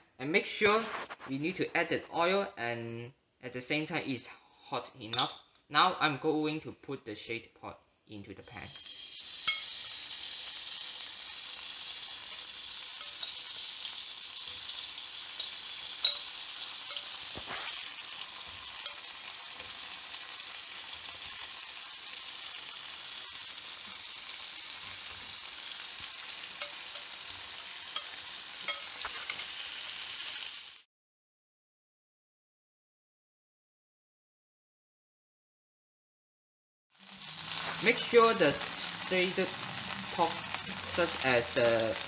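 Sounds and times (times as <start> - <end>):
meat sizzling in oil: 8.5 - 30.9, 36.9 - 42.0
sharp clicks of frying: 8.6 - 30.8, 37.0 - 42.0.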